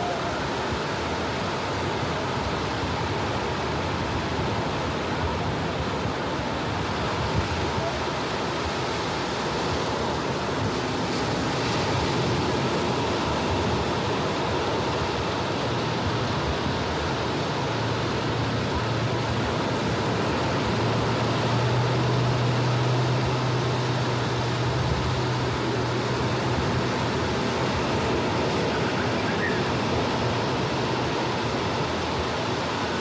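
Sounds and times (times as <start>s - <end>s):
small waves breaking on beach: 0.0s - 33.0s
low engine hum: 8.7s - 33.0s.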